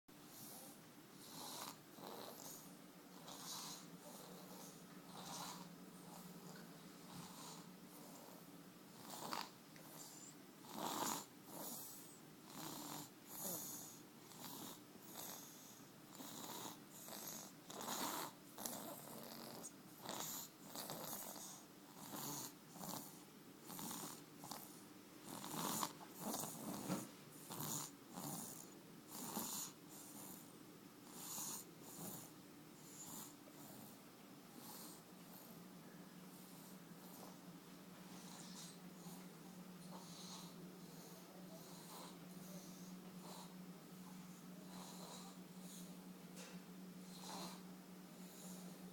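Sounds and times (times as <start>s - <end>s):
soft quick snoring: 0.3s - 30.5s, 38.1s - 48.9s.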